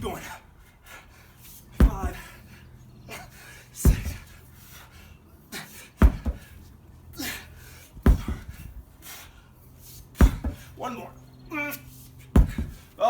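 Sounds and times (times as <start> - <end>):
hard panting breaths: 0.1 - 10.8
sledgehammer heavy thuds: 1.8 - 2.3, 3.8 - 4.4, 6.0 - 6.6, 8.0 - 8.8, 10.2 - 10.8, 12.3 - 13.0.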